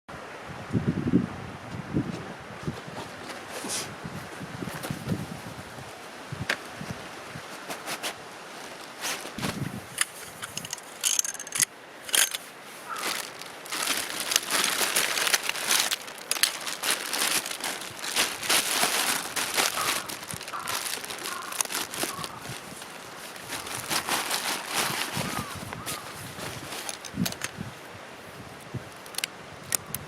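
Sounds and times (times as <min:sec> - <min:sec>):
crinkling and rustling: 0:04.6 - 0:05.4, 0:07.4 - 0:27.8, 0:28.9 - 0:29.9.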